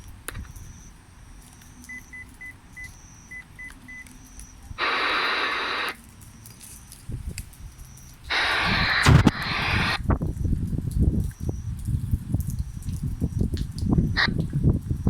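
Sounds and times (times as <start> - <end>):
radio receiver beeping: 0.3 - 6.6, 7.8 - 10.0
radio static hiss: 0.3 - 6.8, 7.7 - 10.1.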